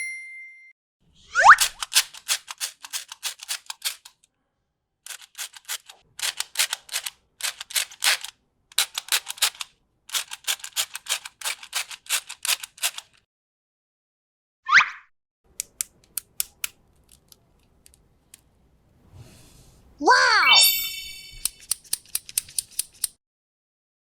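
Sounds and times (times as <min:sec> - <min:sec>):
sharp clicks from toys: 0:01.5 - 0:04.3, 0:05.1 - 0:13.2, 0:15.5 - 0:18.5, 0:21.4 - 0:23.2.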